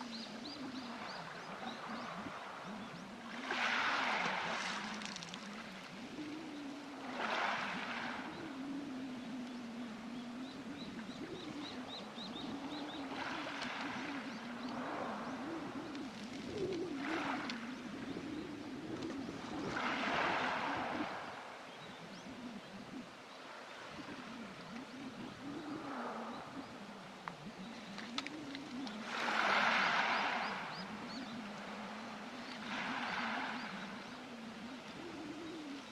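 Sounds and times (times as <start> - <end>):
waves washing over pebbles: 3.4 - 5.6, 29.0 - 30.7.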